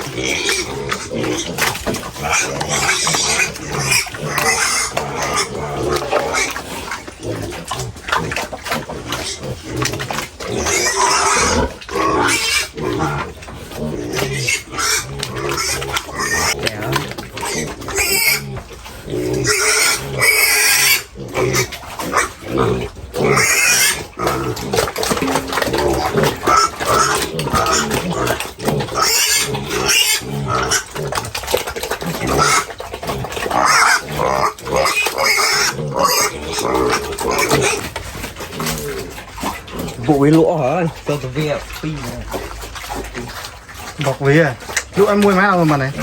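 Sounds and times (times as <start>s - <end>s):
pigs squealing and grunting: 0.0s - 46.0s.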